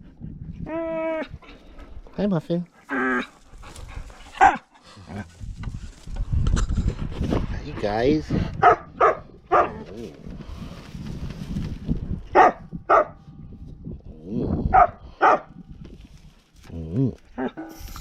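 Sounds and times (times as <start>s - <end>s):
dog barking: 4.4s - 4.6s, 8.6s - 9.8s, 12.3s - 13.2s, 14.7s - 15.5s.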